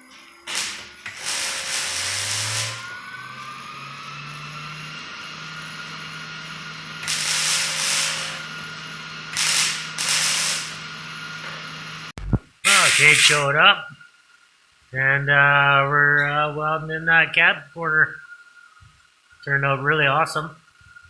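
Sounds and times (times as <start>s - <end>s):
loud hissing bursts: 0.0s - 3.3s, 4.0s - 11.4s, 12.0s - 13.8s
motor hum: 0.0s - 12.5s.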